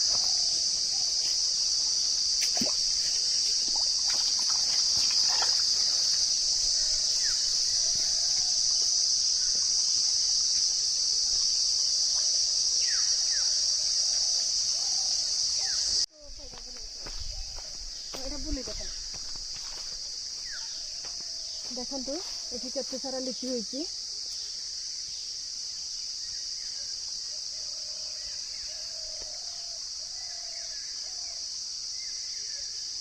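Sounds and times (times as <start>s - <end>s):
stream trickling: 0.0s - 13.4s
insects shrilling: 0.0s - 20.8s.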